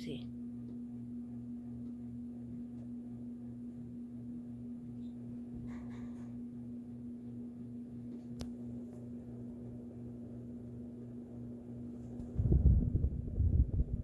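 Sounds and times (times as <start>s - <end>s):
ceiling fan motor humming: 0.0s - 14.0s
irregular low rumbling: 12.3s - 14.0s.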